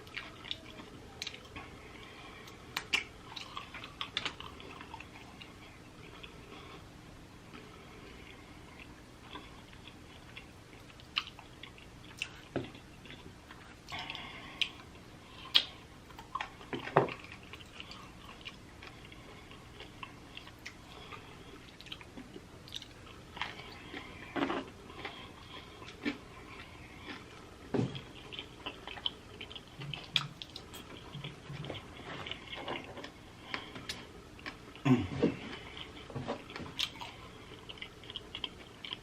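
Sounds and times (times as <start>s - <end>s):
person chewing food: 0.0s - 6.9s, 7.5s - 39.0s.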